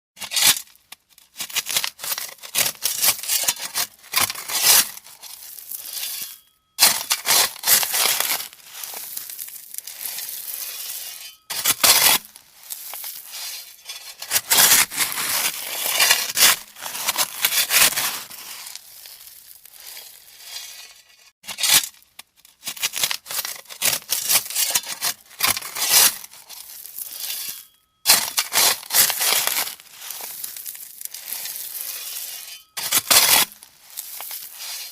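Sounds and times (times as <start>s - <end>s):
shovel scraping into gravel: 0.2s - 0.8s, 1.4s - 22.0s, 22.7s - 34.9s.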